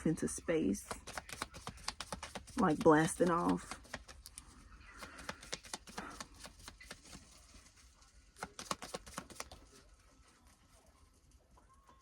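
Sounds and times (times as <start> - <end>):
rapid light clicks and taps: 0.8 - 4.4, 5.0 - 7.3, 8.4 - 9.7.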